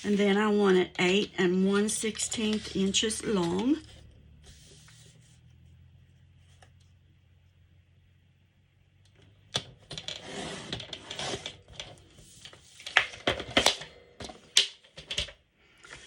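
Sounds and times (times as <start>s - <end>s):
cardstock scraping and rustling: 1.2s - 5.5s, 9.9s - 13.7s.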